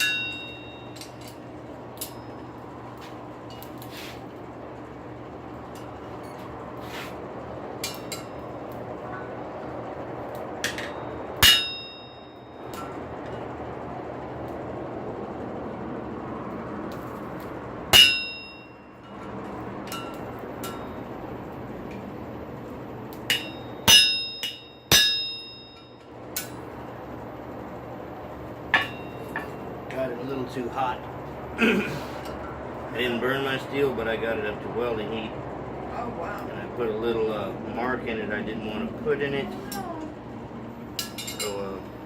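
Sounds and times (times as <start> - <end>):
hammer striking anvil: 0.0 - 1.3, 10.6 - 12.9, 17.9 - 18.8, 23.3 - 26.6, 28.7 - 29.5
forge air blower hissing: 3.8 - 4.3, 6.5 - 7.8.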